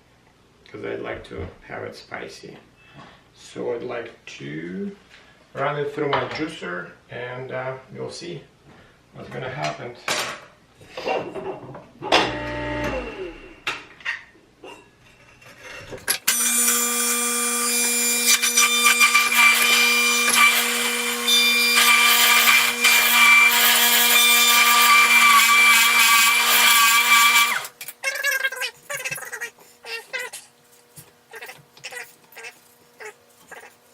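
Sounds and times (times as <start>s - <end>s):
electric juicer grinding: 12.2s - 13.7s, 16.1s - 27.8s.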